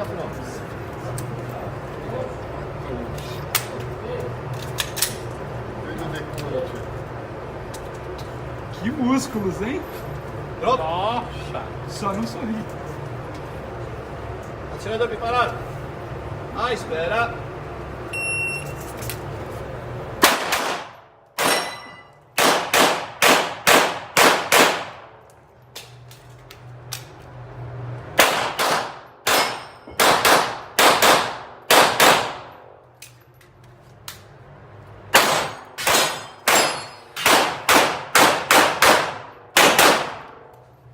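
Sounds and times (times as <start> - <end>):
short start beep: 18.1 - 18.8
pistol shots: 20.2 - 21.7, 22.4 - 25.1, 28.2 - 32.5, 35.1 - 40.4.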